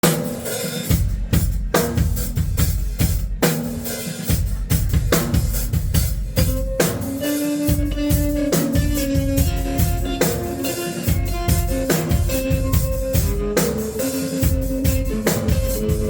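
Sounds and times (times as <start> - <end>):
drum kit beating: 0.0 - 16.0
live rock band playing: 0.0 - 16.0
held instrument notes: 6.4 - 16.0.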